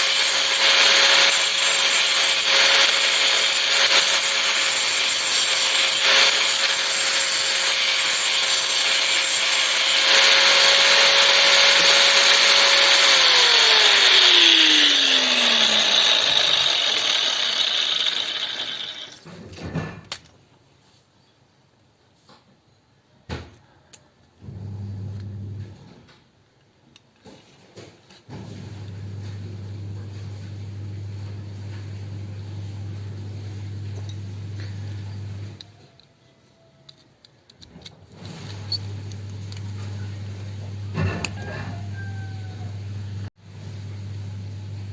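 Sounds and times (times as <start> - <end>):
small power tool grinding: 0.0 - 19.3, 28.5 - 35.7, 38.1 - 43.3.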